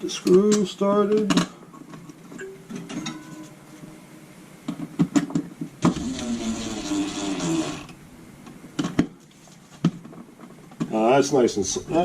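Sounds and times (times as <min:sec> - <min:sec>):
cordless drill motor whirring: 0:05.9 - 0:08.0.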